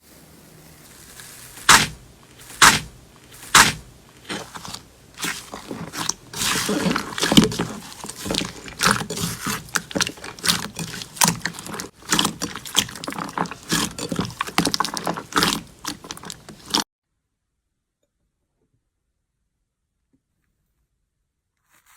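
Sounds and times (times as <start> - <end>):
slime squelching and popping: 0.9 - 16.8.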